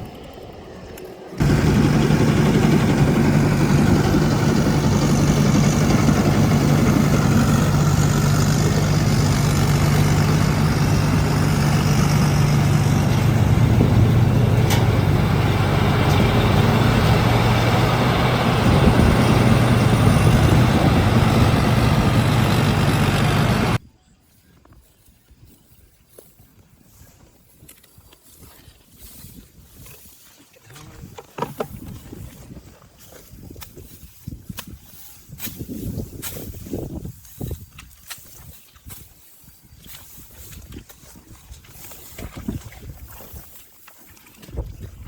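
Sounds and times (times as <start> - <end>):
harvester engine running: 0.0 - 23.8.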